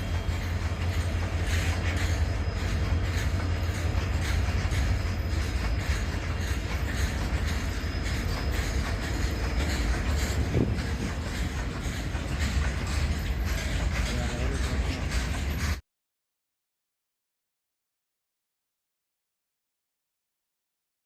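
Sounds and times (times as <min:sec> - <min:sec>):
diesel locomotive engine chugging: 0:00.0 - 0:15.8.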